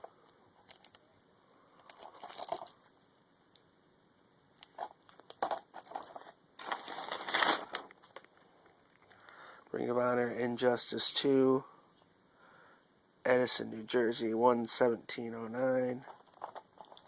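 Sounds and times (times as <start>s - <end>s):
crinkly rustling: 1.8s - 3.1s, 4.6s - 9.2s, 15.6s - 17.0s.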